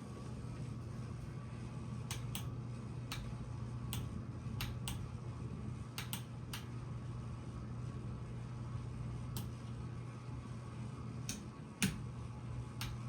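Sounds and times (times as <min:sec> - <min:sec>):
ceiling fan motor hum: 0:00.0 - 0:13.0
sharp clicks: 0:06.0 - 0:06.7.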